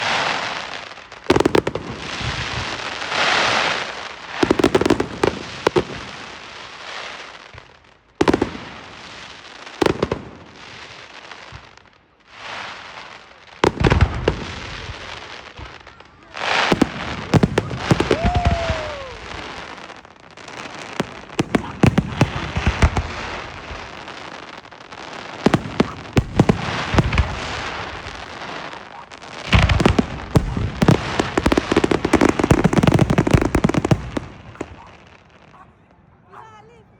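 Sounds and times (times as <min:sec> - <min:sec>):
fireworks banging and crackling: 0:00.0 - 0:36.8
firework whistle: 0:17.5 - 0:19.8.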